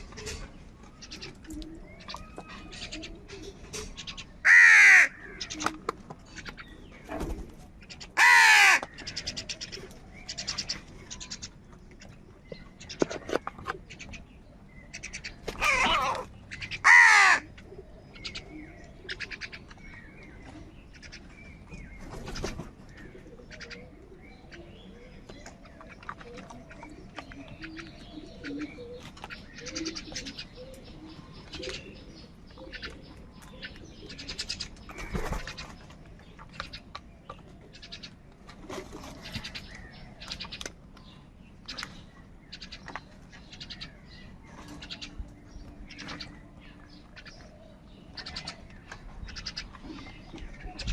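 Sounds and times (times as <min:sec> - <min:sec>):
crows cawing: 0:04.4 - 0:05.6, 0:08.2 - 0:09.4, 0:14.9 - 0:17.6.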